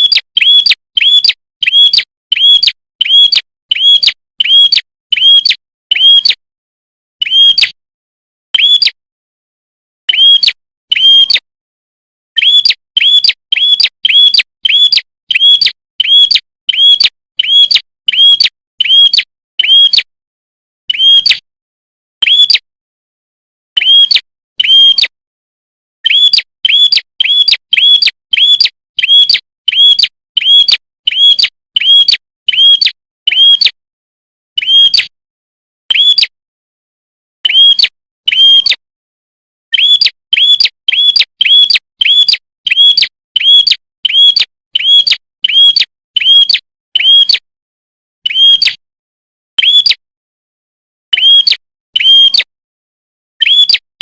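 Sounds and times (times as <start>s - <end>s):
bird chirping sharply: 0.0s - 6.4s, 7.2s - 7.7s, 8.6s - 9.0s, 12.4s - 20.0s, 20.9s - 21.4s, 26.0s - 33.6s, 34.6s - 35.0s, 39.7s - 47.3s, 48.3s - 48.7s, 53.4s - 53.8s.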